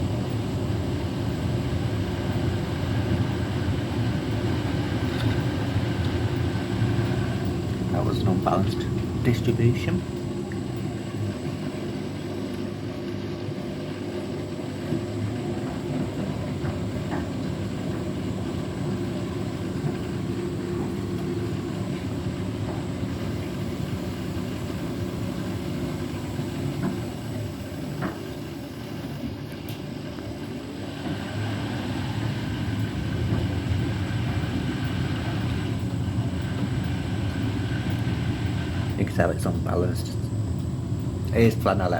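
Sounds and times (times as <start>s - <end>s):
washing machine drum motor running: 0.0s - 41.9s
faint knocks in washing machine: 14.8s - 18.1s.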